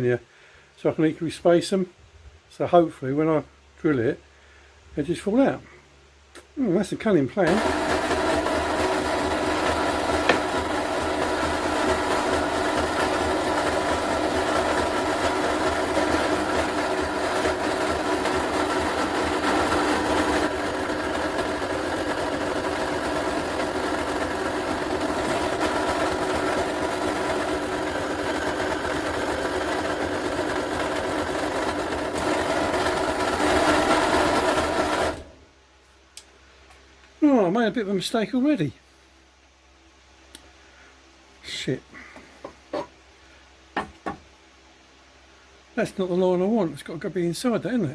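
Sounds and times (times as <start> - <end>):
electric drill drilling steel: 7.5 - 35.3.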